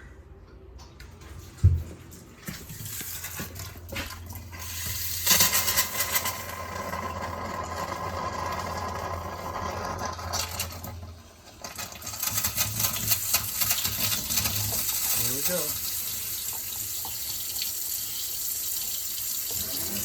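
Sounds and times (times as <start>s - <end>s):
water rushing from a tap: 2.8s - 20.0s.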